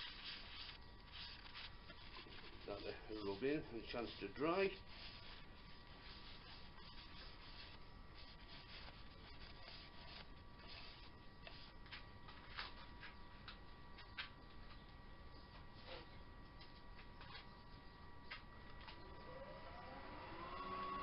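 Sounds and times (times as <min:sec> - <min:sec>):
faint rubbing: 0:00.0 - 0:12.9
steady faint whine: 0:00.0 - 0:21.0.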